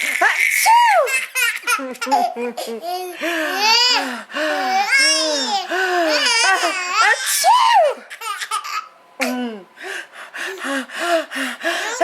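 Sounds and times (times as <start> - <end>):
baby laughing and squealing: 0.0 - 3.0.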